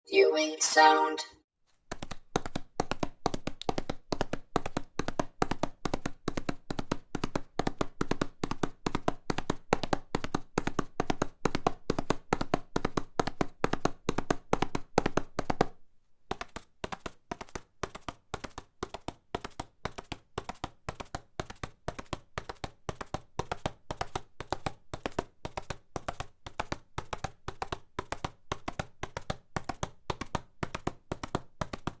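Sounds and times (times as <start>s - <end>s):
horse hooves galloping on hard ground: 1.9s - 15.2s.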